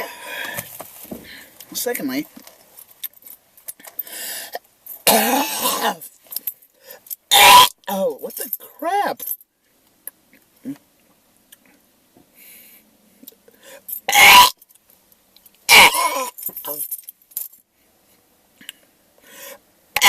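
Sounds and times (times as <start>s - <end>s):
person coughing harshly: 5.0s - 6.1s, 15.7s - 16.3s.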